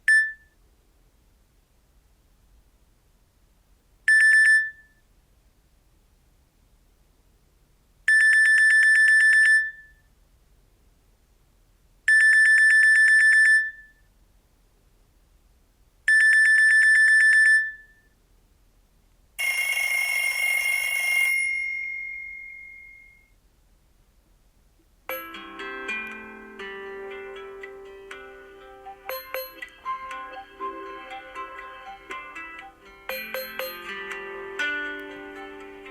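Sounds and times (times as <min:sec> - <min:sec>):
fuller phone tone: 0:19.4 - 0:23.3, 0:28.9 - 0:34.2
fast electronic ringtone trill: 0:25.1 - 0:25.4, 0:28.9 - 0:34.2.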